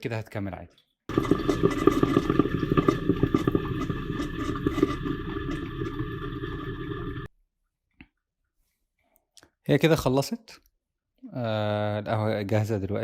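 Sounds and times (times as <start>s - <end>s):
coffee maker gurgling and sputtering: 1.1s - 7.3s.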